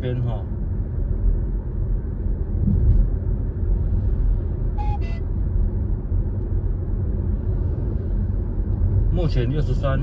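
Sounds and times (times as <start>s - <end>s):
road and tyre rumble: 0.0s - 10.0s
short beep: 4.8s - 5.3s.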